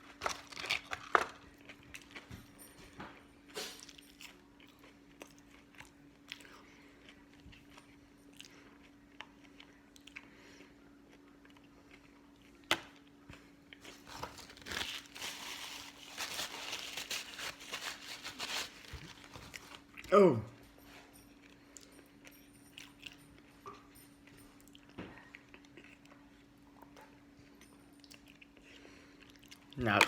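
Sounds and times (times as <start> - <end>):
person chewing crunchy food: 0.0 - 2.3, 3.7 - 20.1, 24.6 - 27.2, 28.0 - 30.0
faint steady hum: 0.0 - 30.0.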